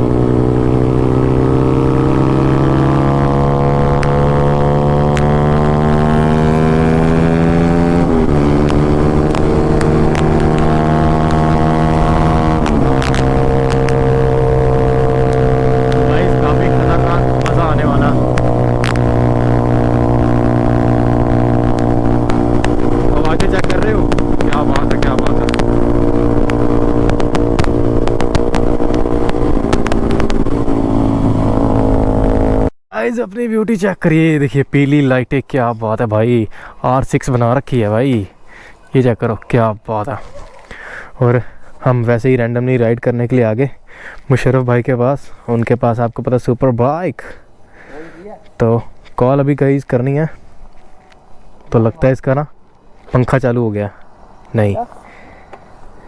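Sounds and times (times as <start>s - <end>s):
motorcycle engine running: 0.0s - 32.7s.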